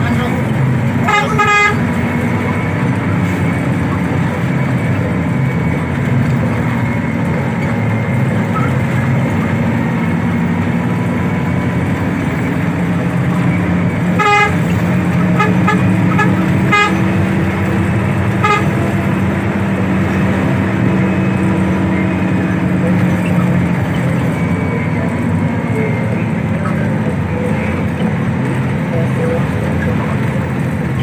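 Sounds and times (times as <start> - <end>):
bus engine drone: 0.0 - 31.0
bus horn toots: 0.2 - 31.0.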